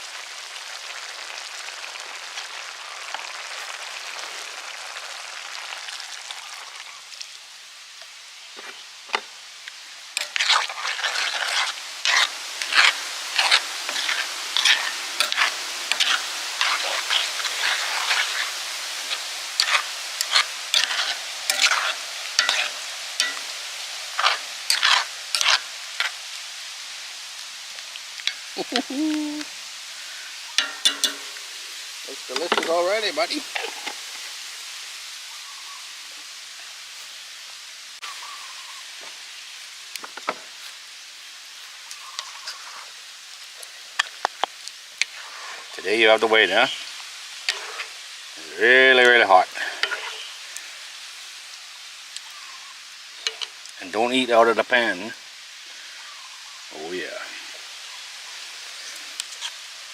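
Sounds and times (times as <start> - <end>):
stew sizzling in a pan: 0.0 - 59.9
utensil scraping and clacking on pan: 10.2 - 23.5, 24.2 - 26.2, 30.6 - 31.4, 47.5 - 48.0, 49.6 - 50.2, 53.2 - 53.6.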